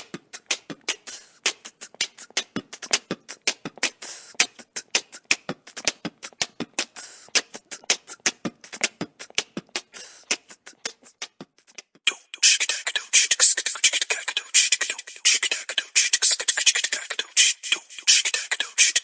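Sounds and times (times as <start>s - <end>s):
person beatboxing: 0.0s - 19.0s.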